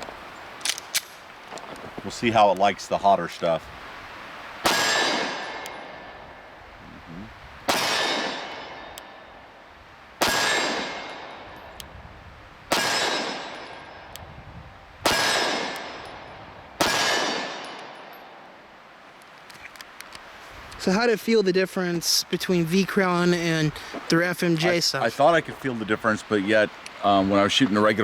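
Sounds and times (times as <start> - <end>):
pistol shots: 4.6 - 5.8, 7.7 - 9.0, 10.2 - 11.5, 12.7 - 14.1, 15.0 - 16.2, 16.8 - 18.0
steel target ringing: 7.7 - 9.4, 10.2 - 11.8, 12.7 - 14.2.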